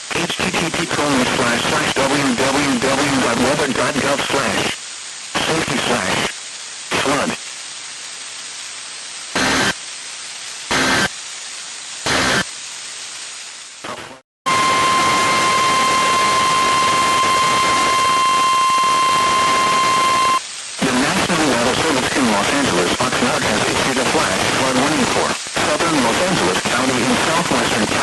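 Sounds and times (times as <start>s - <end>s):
static hiss: 0.0s - 28.0s
synthesized voice: 0.1s - 4.8s, 5.4s - 6.3s, 6.9s - 7.4s, 13.8s - 14.7s, 20.8s - 28.0s
digital data bursts: 9.4s - 9.8s, 10.7s - 11.1s, 12.0s - 12.5s, 14.5s - 28.0s
loud steady alert tone: 10.7s - 11.1s, 14.5s - 20.4s.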